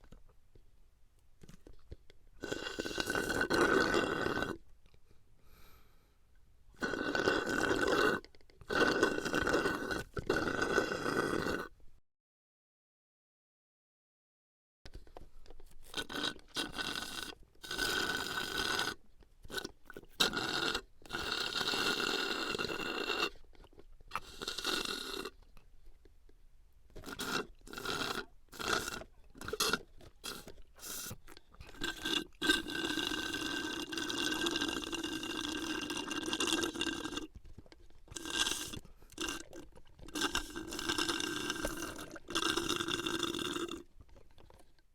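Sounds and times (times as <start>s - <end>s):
sucking through a drinking straw: 2.4s - 4.6s, 6.8s - 11.8s, 15.8s - 25.4s, 27.0s - 44.8s.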